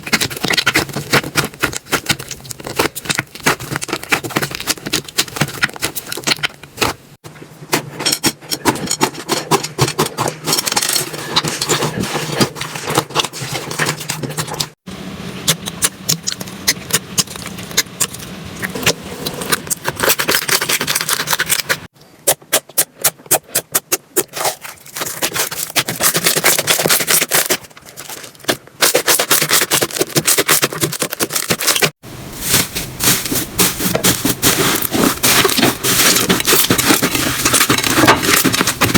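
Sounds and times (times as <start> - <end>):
slime crackling and popping: 0.0 - 7.0.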